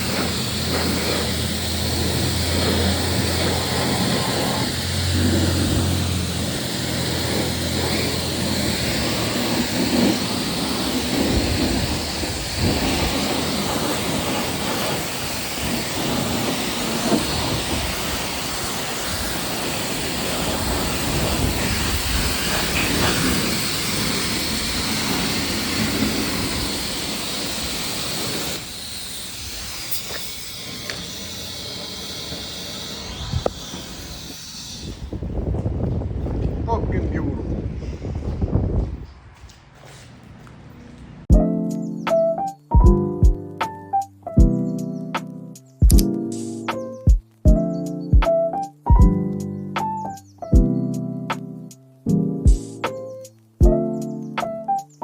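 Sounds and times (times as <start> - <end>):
rushing wind and road noise: 0.0 - 40.6.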